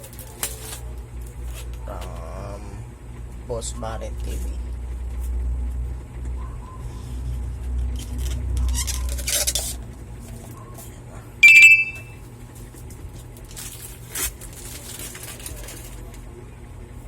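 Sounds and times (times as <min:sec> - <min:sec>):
sharp high-pitched squeak: 0:11.4 - 0:12.2.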